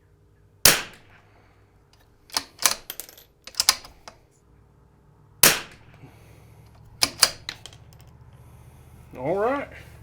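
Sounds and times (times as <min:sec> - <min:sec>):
rifle shot: 0:00.6 - 0:01.3, 0:05.4 - 0:06.0
rifle bolt clicking: 0:02.0 - 0:04.2, 0:07.0 - 0:07.8.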